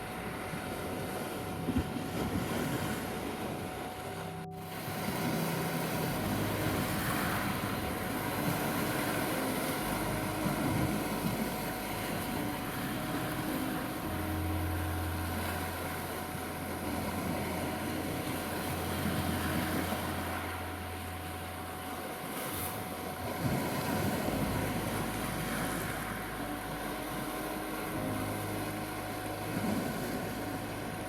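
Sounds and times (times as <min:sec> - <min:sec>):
meditation music drone notes: 0:00.0 - 0:31.0
steady tone: 0:00.0 - 0:31.0
waves washing on a beach: 0:00.0 - 0:31.0.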